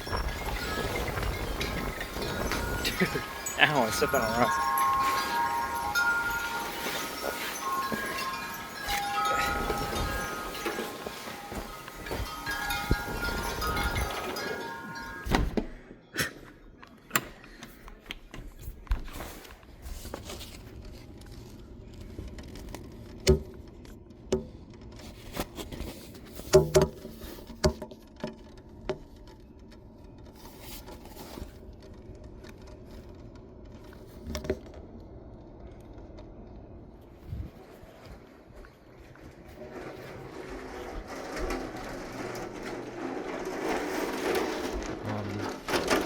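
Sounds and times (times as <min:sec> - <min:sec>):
strong wind: 0:00.0 - 0:14.4
wind chimes ringing: 0:00.0 - 0:15.5.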